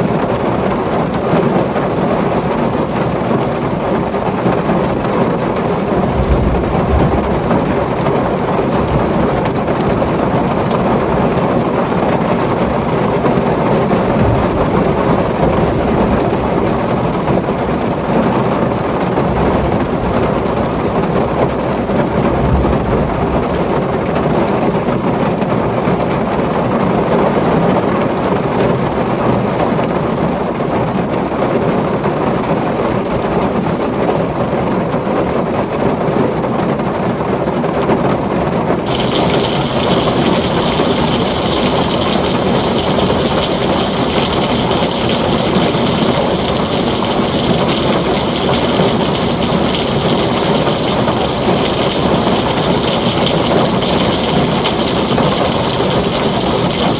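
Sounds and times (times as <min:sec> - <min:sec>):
heavy rain on a tin roof: 0:00.0 - 0:13.5, 0:38.9 - 0:56.9
thunder rumbling: 0:05.9 - 0:09.2, 0:38.9 - 0:56.9.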